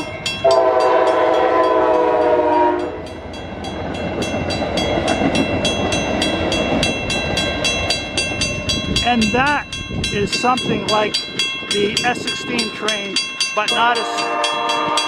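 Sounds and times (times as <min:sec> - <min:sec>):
crossing bell ringing: 0:00.0 - 0:15.0
train rumbling past: 0:00.0 - 0:15.0
train horn: 0:00.4 - 0:03.1, 0:14.0 - 0:15.0.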